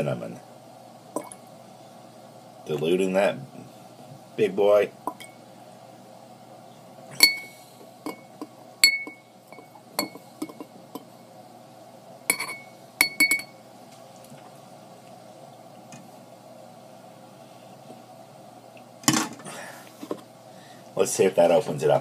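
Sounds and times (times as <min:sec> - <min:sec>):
glass clinking: 0:05.1 - 0:05.4, 0:07.2 - 0:11.1, 0:12.3 - 0:13.6.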